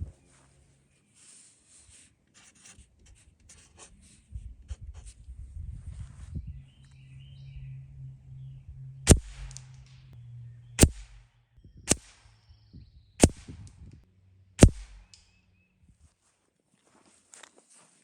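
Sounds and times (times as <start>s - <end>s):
low steady hum: 6.5s - 15.2s
air rifle shots: 9.1s - 9.8s, 10.8s - 11.3s, 11.9s - 12.3s, 13.2s - 13.6s, 14.6s - 15.2s.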